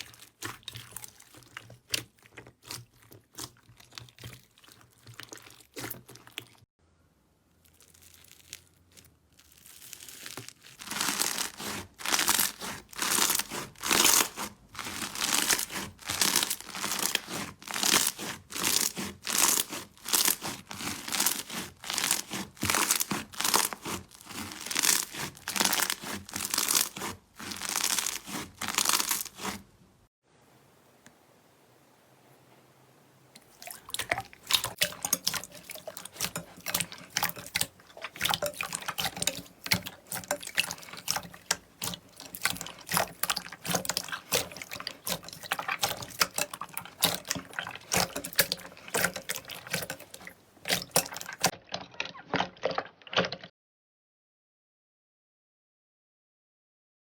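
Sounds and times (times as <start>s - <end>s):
slime squishing by hand: 0.0s - 6.7s, 7.6s - 29.8s, 33.4s - 53.5s.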